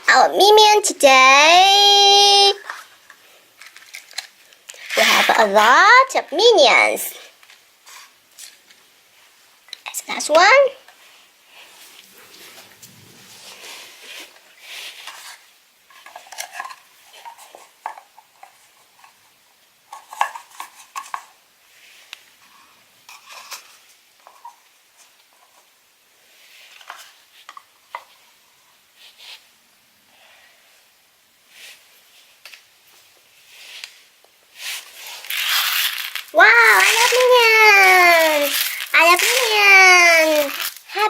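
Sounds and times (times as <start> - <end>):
plastic toys clattering: 2.6 - 5.6, 15.1 - 19.2, 19.9 - 21.3, 34.6 - 41.0.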